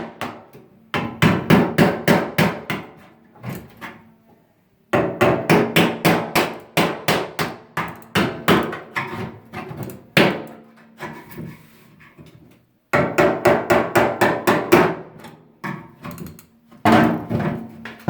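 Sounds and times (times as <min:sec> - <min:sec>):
hammer striking microwave oven: 0:05.0 - 0:08.9, 0:13.0 - 0:15.0.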